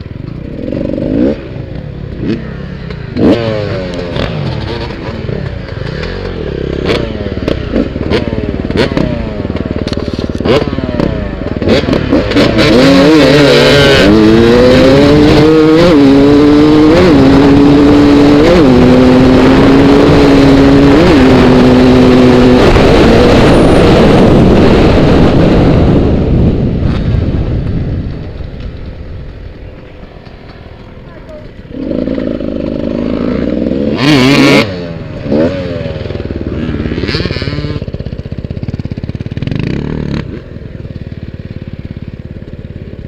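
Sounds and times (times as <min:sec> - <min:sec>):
engine revving and accelerating: 0:03.1 - 0:09.8, 0:10.4 - 0:26.1, 0:31.7 - 0:38.0.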